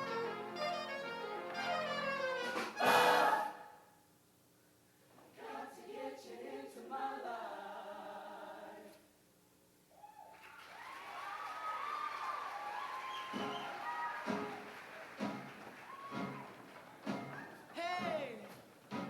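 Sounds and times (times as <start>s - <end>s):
show choir singing chords: 2.8s - 3.8s, 5.4s - 8.9s.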